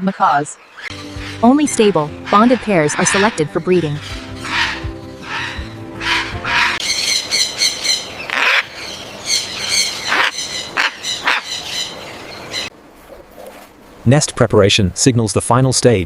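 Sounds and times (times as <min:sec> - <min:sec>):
macaws squawking: 0:00.7 - 0:12.7.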